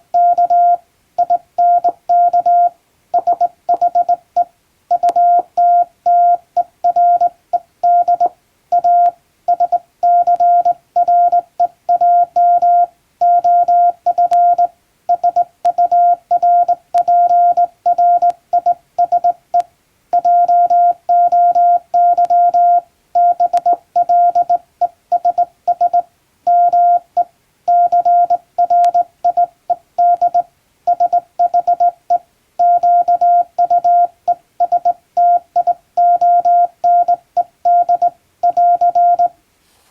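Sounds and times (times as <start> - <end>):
morse code beeps: 0.2 - 19.6, 20.2 - 39.3.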